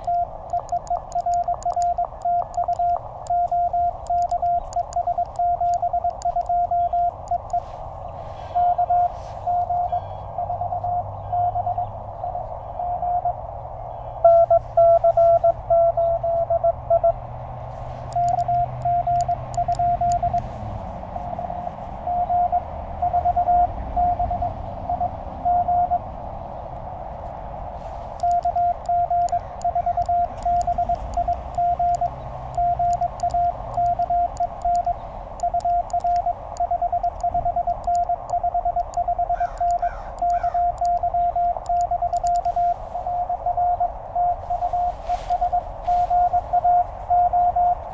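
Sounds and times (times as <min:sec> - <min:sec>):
paddle key clicks: 0:00.0 - 0:07.6, 0:18.0 - 0:20.5, 0:28.0 - 0:42.9
morse code tone: 0:00.0 - 0:13.4, 0:14.2 - 0:26.2, 0:27.7 - 0:47.9
radio hiss: 0:00.0 - 0:16.6, 0:17.6 - 0:47.9.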